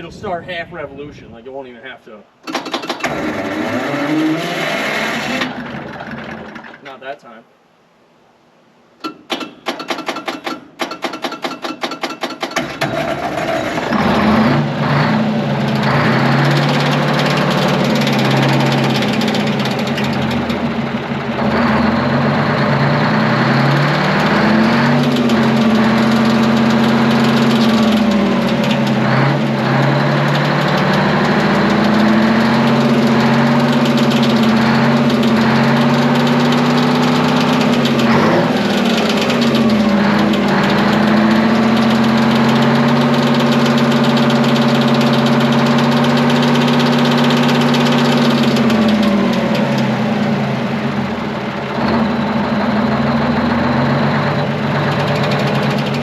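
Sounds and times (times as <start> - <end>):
diesel engine starting: 2.4 - 7.2, 9.2 - 56.0
diesel engine running loud: 12.6 - 56.0.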